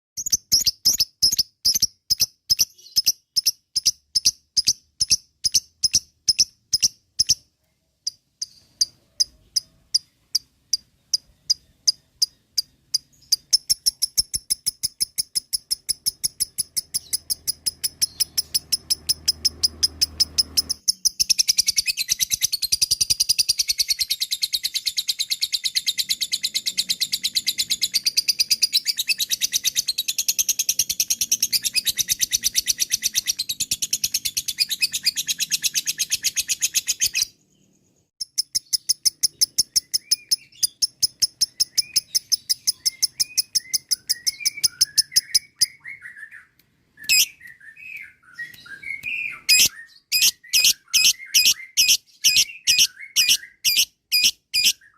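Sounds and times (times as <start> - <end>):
lovebird chattering calls: 8.4 - 37.3, 38.2 - 46.0, 47.1 - 47.4, 48.4 - 54.9.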